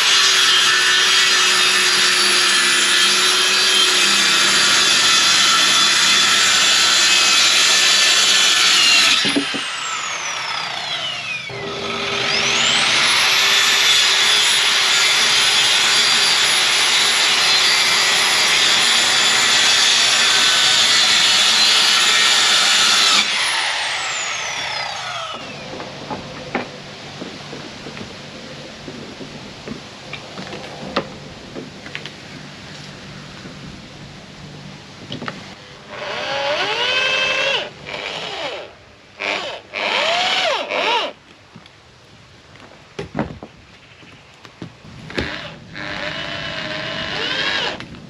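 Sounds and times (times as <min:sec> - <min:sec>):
power saw whining: 0:00.0 - 0:29.3.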